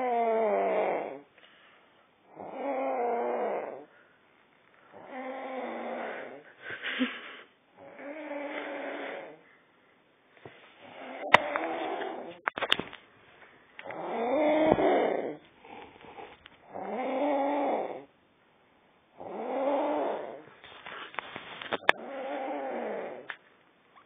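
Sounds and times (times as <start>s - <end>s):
woman snoring loudly: 0.0s - 1.3s, 2.3s - 3.9s, 4.9s - 6.4s, 7.8s - 9.4s, 10.8s - 12.4s, 13.9s - 18.1s, 19.2s - 20.5s, 21.8s - 23.3s.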